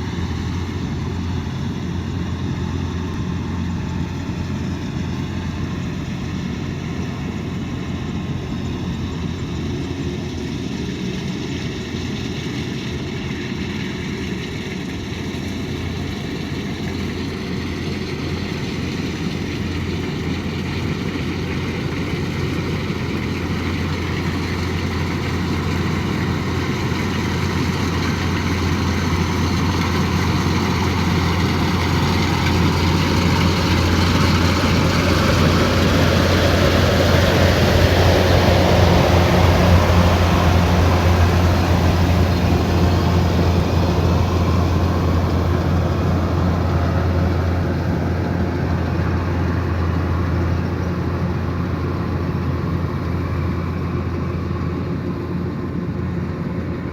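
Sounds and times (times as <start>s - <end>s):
combine harvester running: 0.0s - 56.9s.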